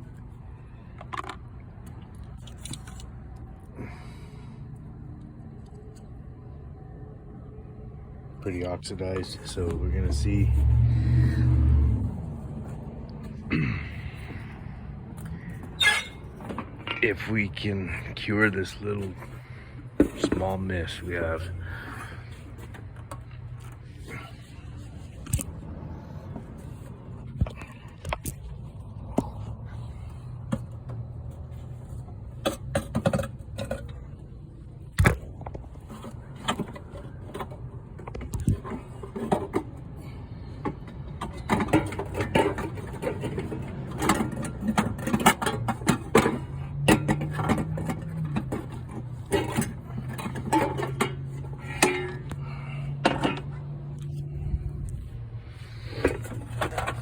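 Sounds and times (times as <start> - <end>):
engine idling: 35.7 - 57.0.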